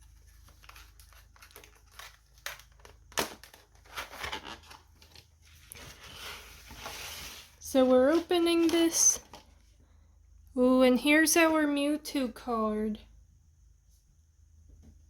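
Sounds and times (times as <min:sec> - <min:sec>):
plastic packaging crinkling: 0:00.0 - 0:09.6
clicks and sharp crackles: 0:00.1 - 0:06.0.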